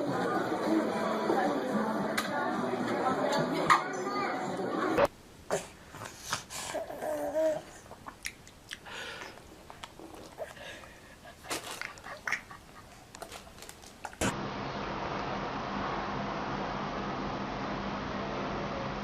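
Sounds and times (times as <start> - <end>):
baby vocalizing: 6.6 - 8.1.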